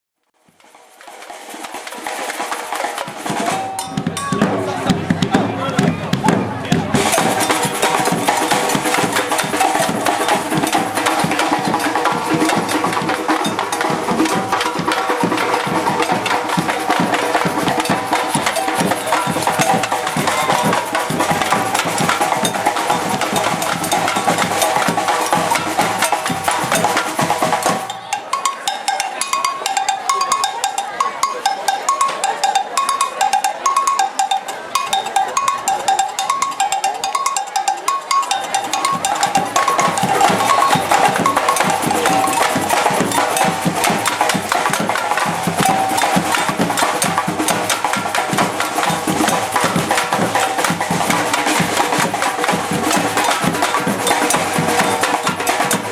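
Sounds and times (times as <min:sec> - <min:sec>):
percussion group drumming: 0:00.4 - 0:55.9
high two-note pattern: 0:27.7 - 0:46.8.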